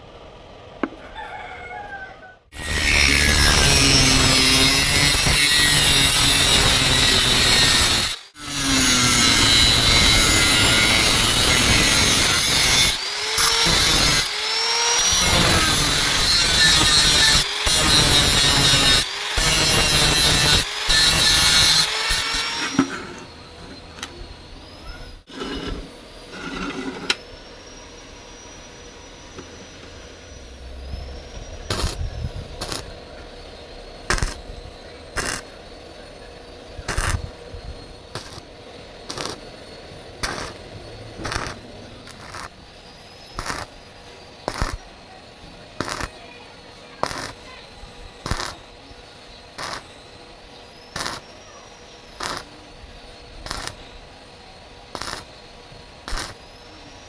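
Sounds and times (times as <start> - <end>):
angle grinder grinding steel: 2.6 - 44.9, 46.9 - 48.7, 53.5 - 53.9
faint whine: 22.6 - 57.0.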